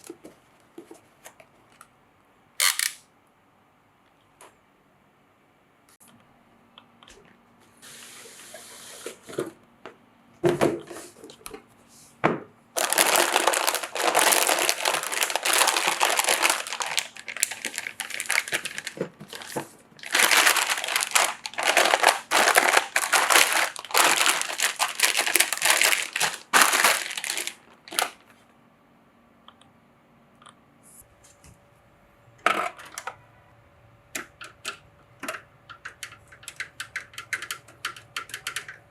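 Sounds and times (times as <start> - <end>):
packaging crinkling: 12.8 - 28.3.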